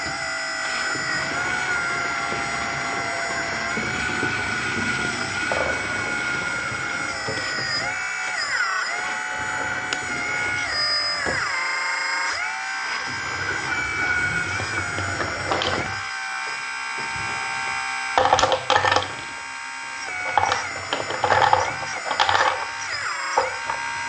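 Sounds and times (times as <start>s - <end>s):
small electric pump motor whining: 0.0s - 24.0s.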